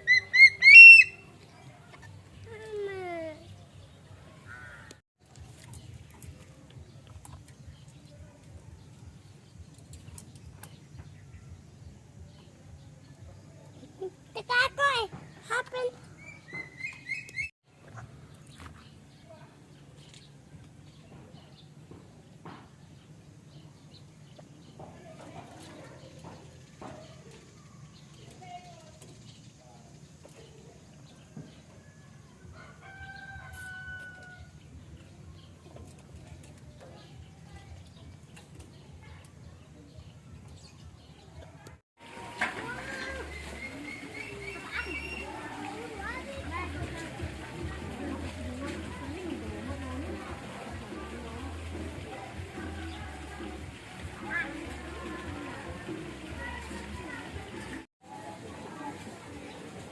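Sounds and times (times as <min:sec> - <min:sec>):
rooster crowing: 0:32.5 - 0:34.5.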